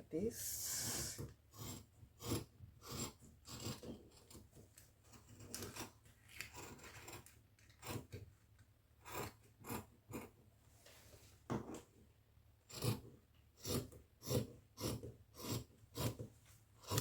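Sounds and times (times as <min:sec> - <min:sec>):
scissors snipping fabric: 0:13.6 - 0:17.0.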